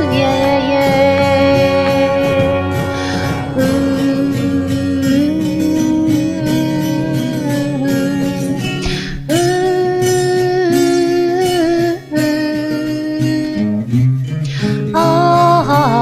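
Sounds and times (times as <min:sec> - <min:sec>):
held wordless melody notes: 0:00.0 - 0:08.9
acoustic guitar: 0:00.0 - 0:16.0.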